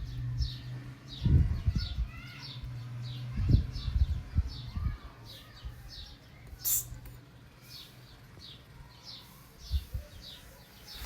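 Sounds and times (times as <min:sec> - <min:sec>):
small bird chirping: 0:00.0 - 0:11.0
brief hiss: 0:06.6 - 0:07.0.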